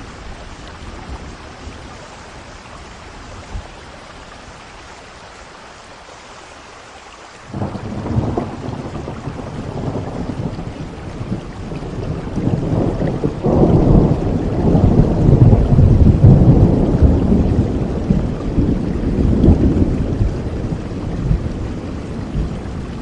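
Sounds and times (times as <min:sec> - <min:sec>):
steady rain: 0:00.0 - 0:23.0
rolling thunder: 0:07.5 - 0:23.0.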